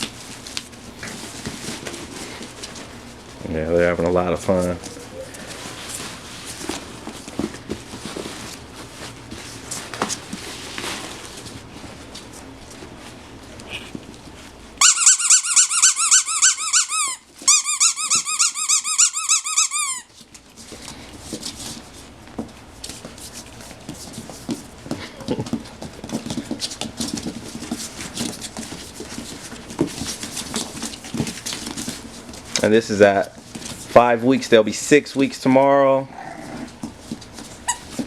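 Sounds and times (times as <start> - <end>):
faint scuffling and clicks: 0.0 - 14.6, 20.1 - 34.6, 36.4 - 38.0
puppy high-pitched squeaks: 14.8 - 20.1, 37.7 - 38.0.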